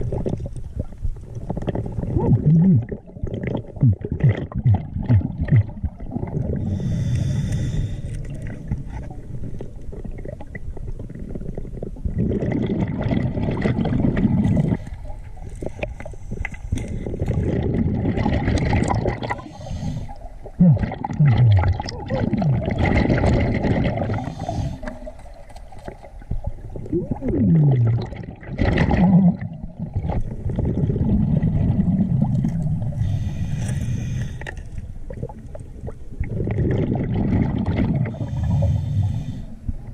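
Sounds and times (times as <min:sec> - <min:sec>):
exhaled air bubbling underwater: 0:00.0 - 0:39.9
scuba regulator inhale hiss: 0:06.6 - 0:08.2, 0:19.4 - 0:20.2, 0:24.2 - 0:25.0, 0:33.0 - 0:34.6, 0:38.2 - 0:39.6.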